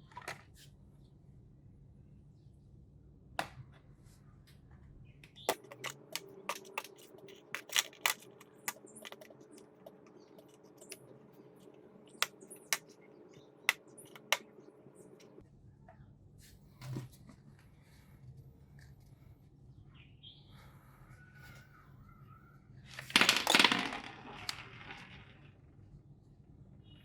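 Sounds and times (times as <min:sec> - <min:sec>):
plastic chess pieces clicking: 0:05.5 - 0:11.0, 0:22.9 - 0:25.3.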